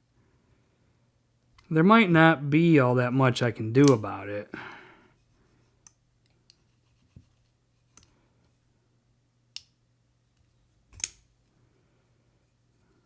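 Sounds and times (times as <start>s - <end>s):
folding knife blade clicks: 10.9s - 11.3s
knife blade snapping shut: 11.0s - 11.2s.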